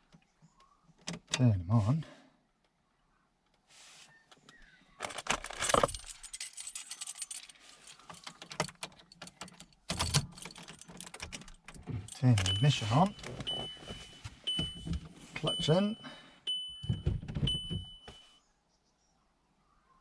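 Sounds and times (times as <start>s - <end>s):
keys jangling: 5.4s - 13.8s.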